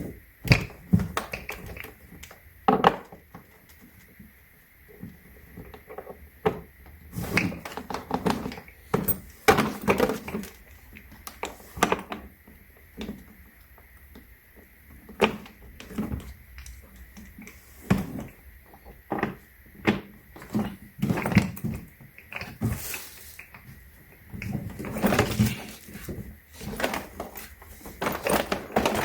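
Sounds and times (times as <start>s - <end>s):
hard plastic suitcase knocks and clicks: 28.0s - 29.0s.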